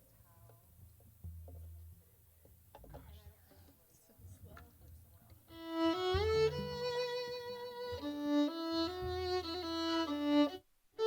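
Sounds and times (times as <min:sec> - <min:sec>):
violin playing slow melody: 0:05.5 - 0:11.0.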